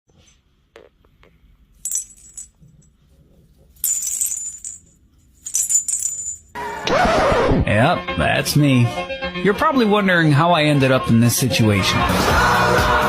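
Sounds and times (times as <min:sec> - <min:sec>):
jingle bells jingling: 0:01.8 - 0:02.6, 0:03.8 - 0:06.6.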